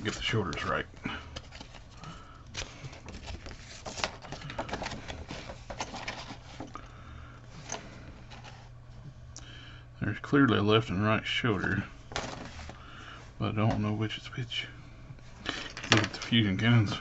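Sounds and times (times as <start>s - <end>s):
faint low hum: 0.0s - 17.0s.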